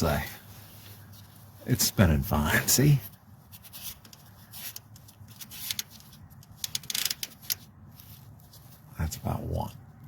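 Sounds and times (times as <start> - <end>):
rustling handling noise: 0.0 - 10.0
clicks and scraping of metal part: 3.5 - 8.2.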